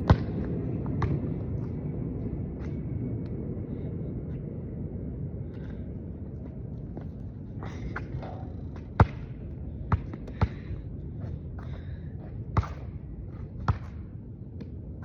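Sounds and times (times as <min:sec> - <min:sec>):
basketball bouncing on hard court: 0:00.0 - 0:01.2, 0:09.0 - 0:09.3, 0:09.9 - 0:10.7, 0:12.6 - 0:12.9, 0:13.6 - 0:14.0
low background rumble: 0:00.0 - 0:15.0.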